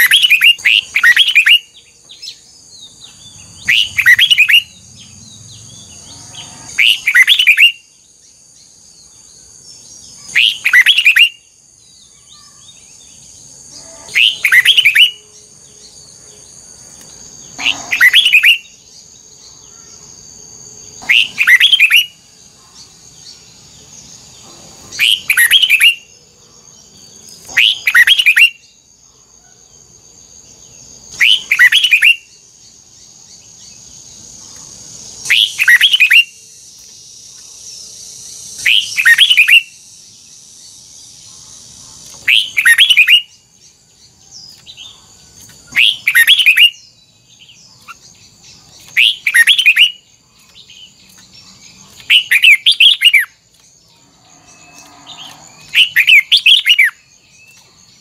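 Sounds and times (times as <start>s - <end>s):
bird singing whistled notes: 0.0s - 9.2s, 10.1s - 16.4s, 17.5s - 20.0s, 20.8s - 22.4s, 24.9s - 26.1s, 27.4s - 28.9s, 31.1s - 32.5s, 35.2s - 41.0s, 42.1s - 58.0s.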